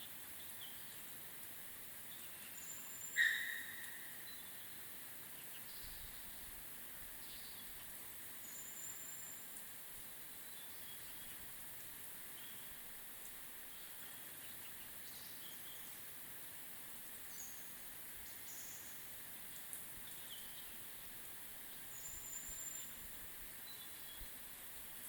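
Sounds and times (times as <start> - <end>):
steady high hiss: 0.0 - 25.0
bird chirps and calls: 2.2 - 4.7
thin high bird call: 3.0 - 4.3.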